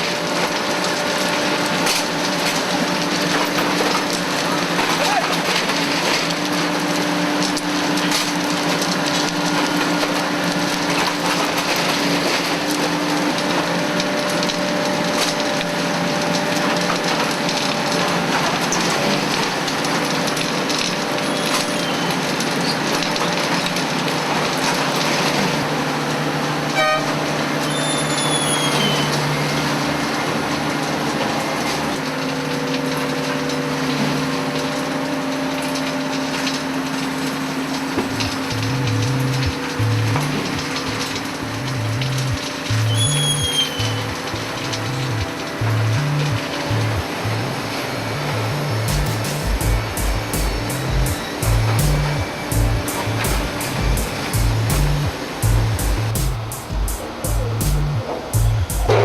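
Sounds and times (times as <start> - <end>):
high squeals: 26.8 - 29.8, 38.2 - 59.0
machinery running with low hum: 36.9 - 59.0.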